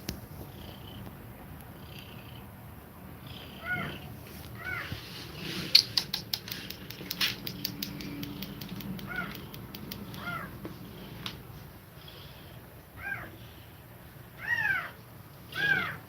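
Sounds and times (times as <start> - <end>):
kittens mewing: 3.2 - 11.2, 12.2 - 13.4, 14.4 - 16.0
sharp clicks and smacks: 5.7 - 11.4.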